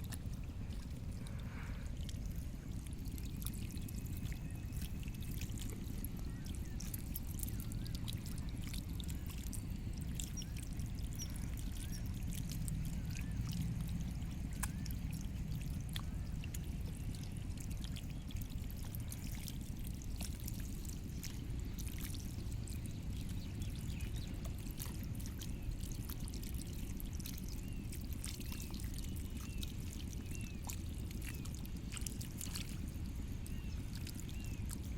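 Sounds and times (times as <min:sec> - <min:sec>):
small splashes and clicks: 0:00.0 - 0:34.9
water running and pouring: 0:00.0 - 0:34.9
faint bird chirps: 0:03.4 - 0:17.4.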